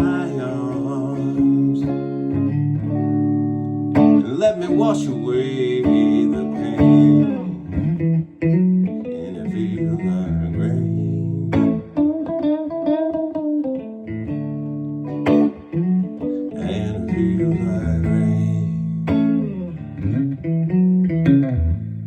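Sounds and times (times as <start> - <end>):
picked guitar notes: 0.0 - 22.0.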